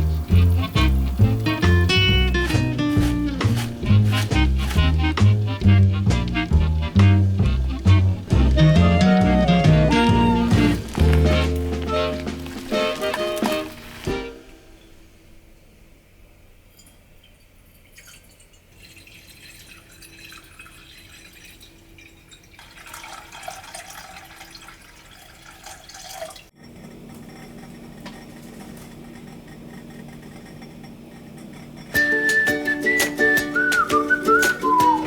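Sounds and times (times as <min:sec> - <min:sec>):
steady low hum: 0:00.0 - 0:12.8
water splashing into container: 0:08.2 - 0:14.5.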